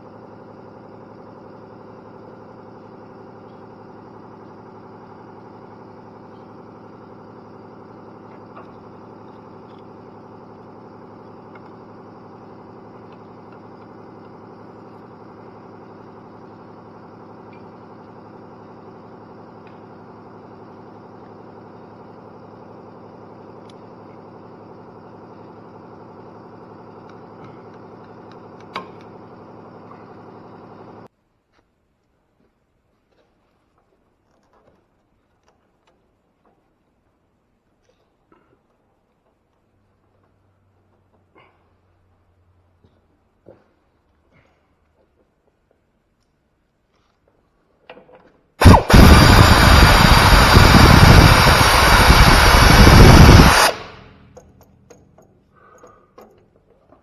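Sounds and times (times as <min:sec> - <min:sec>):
faint clicks of tools: 0:54.3 - 0:57.0.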